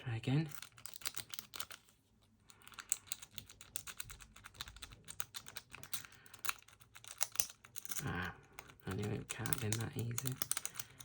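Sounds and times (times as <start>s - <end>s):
lock pick raking clicks: 9.4s - 11.0s.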